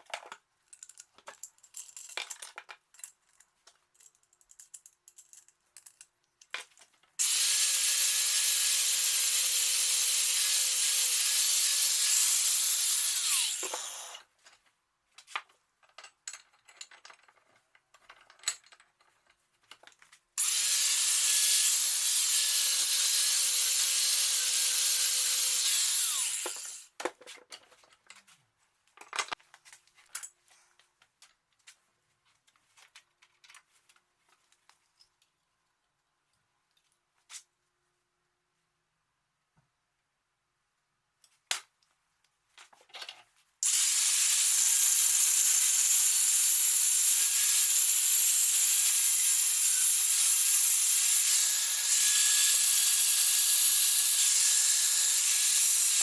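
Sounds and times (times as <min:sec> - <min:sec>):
power tool whining: 0:07.2 - 0:14.2, 0:20.4 - 0:26.8, 0:43.6 - 0:56.0.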